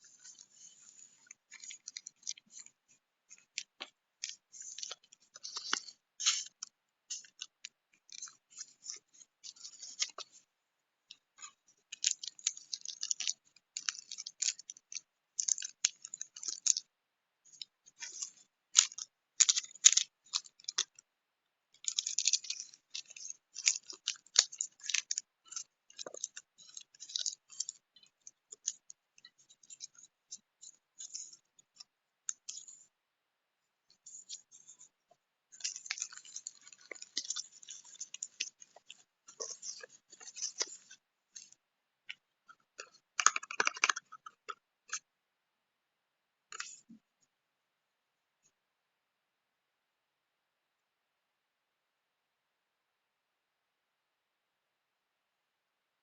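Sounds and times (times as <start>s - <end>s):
packaging crinkling: 35.6s - 41.5s.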